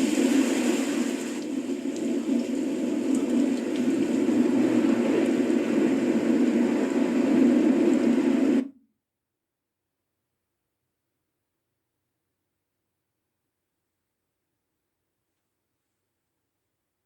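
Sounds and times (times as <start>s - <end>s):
steady rushing noise: 0.0s - 8.7s.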